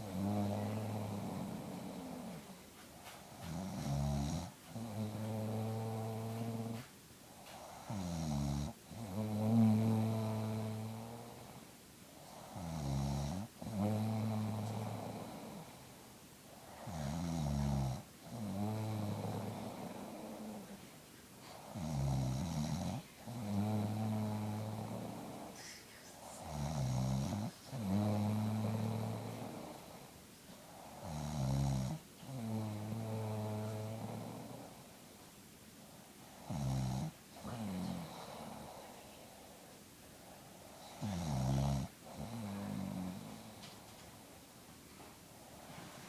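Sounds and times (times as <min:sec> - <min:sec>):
person snoring: 0:16.8 - 0:20.8, 0:40.8 - 0:43.7.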